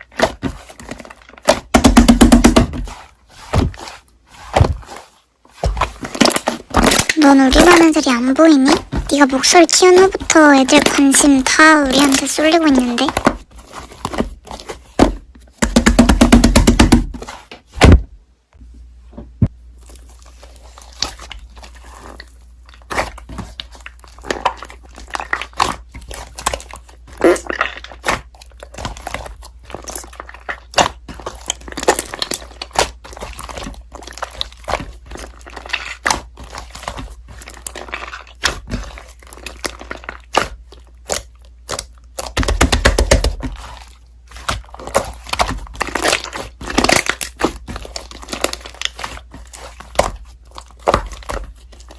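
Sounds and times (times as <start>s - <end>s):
slime crackling and popping: 5.6s - 13.2s, 19.9s - 51.9s.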